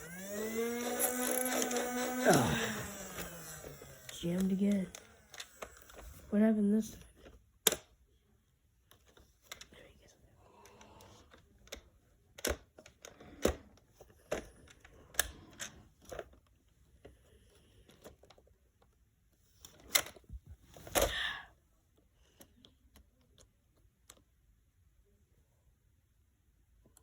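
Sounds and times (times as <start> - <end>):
plastic toy blaster clicking: 0.0 - 6.0.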